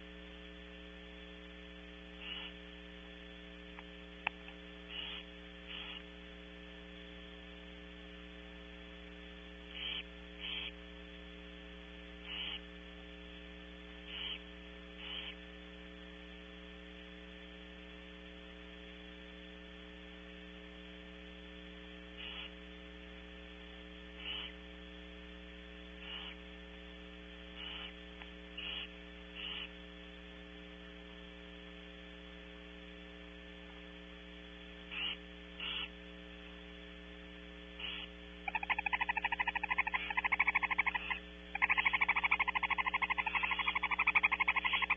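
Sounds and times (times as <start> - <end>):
electrical mains hum: 0.0 - 44.9
owls hissing: 2.2 - 2.6, 4.9 - 6.0, 9.8 - 10.8, 12.2 - 12.6, 14.1 - 14.4, 15.0 - 15.4, 22.2 - 22.5, 24.2 - 24.6, 26.0 - 26.4, 27.6 - 28.0, 28.6 - 29.8, 34.9 - 35.9, 37.8 - 44.9.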